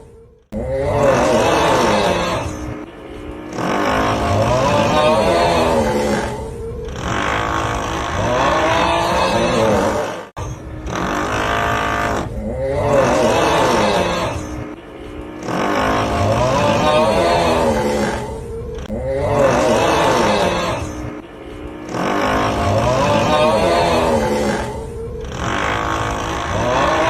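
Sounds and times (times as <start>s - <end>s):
long groaning snore: 0.5s - 27.0s
drilling sound: 6.9s - 12.4s.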